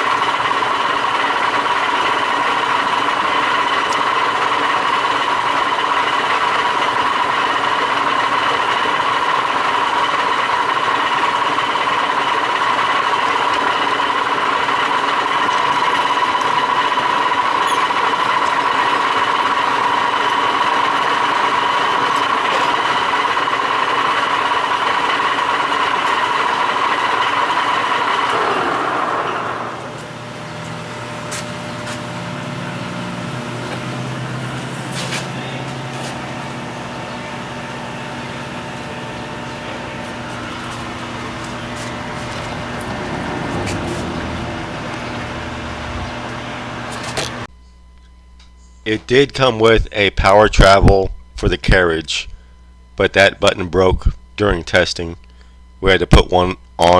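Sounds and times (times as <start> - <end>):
lathe whining: 0.0 - 31.4
low machine hum: 0.0 - 56.9.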